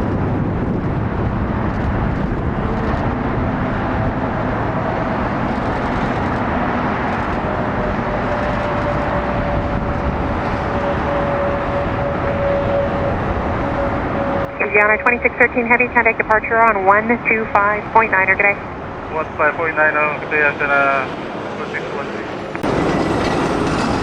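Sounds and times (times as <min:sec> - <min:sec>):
jet engine roar: 0:00.0 - 0:24.0.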